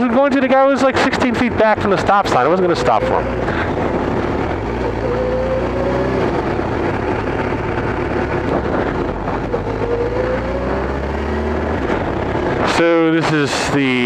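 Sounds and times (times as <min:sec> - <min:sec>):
motorcycle engine running: 0:00.0 - 0:14.0
wind noise on microphone: 0:03.4 - 0:13.8.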